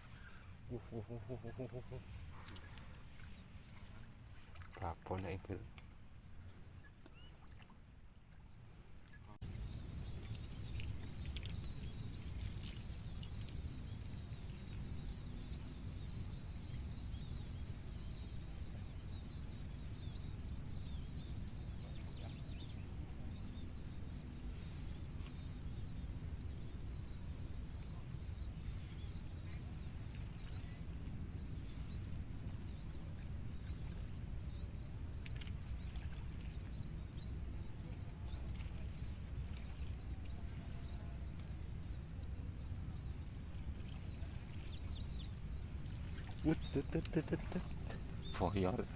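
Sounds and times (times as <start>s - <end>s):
insect chorus chirring: 0.0s - 3.6s, 9.2s - 48.9s
faint clicks: 10.2s - 13.6s.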